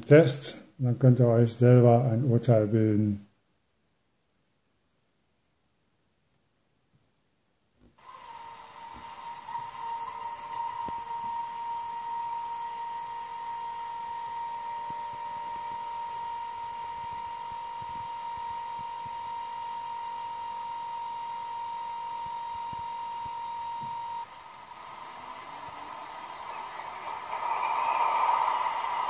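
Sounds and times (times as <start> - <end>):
pump whine over hiss: 8.0 - 29.0.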